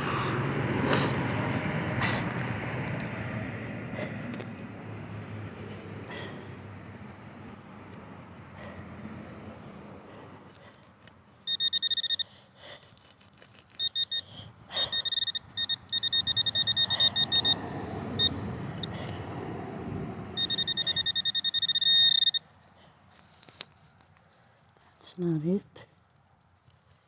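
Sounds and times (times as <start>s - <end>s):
sharp clicks from dirt handling: 4.1s - 4.7s, 12.7s - 14.0s, 23.1s - 24.9s
metal detector beeping: 11.4s - 12.5s, 13.7s - 19.1s, 20.4s - 22.5s.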